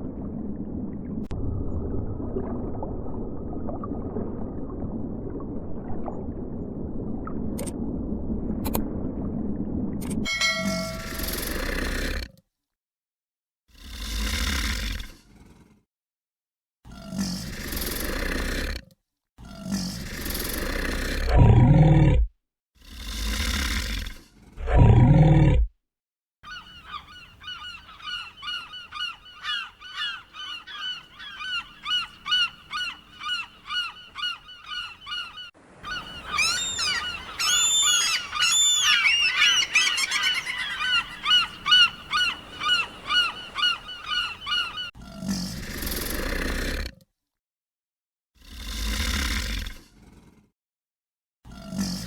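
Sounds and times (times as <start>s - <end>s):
birds honking: 26.5s - 44.9s.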